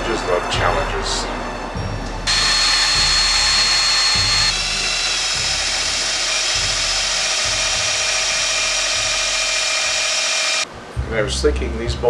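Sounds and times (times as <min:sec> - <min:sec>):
power drill whining: 0:02.3 - 0:10.7.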